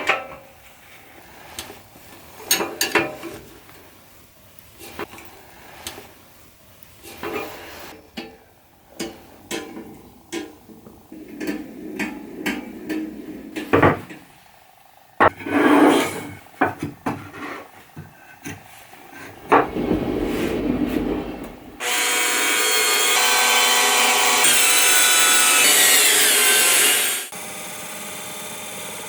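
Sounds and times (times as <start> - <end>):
scraping: 18.6 - 22.1.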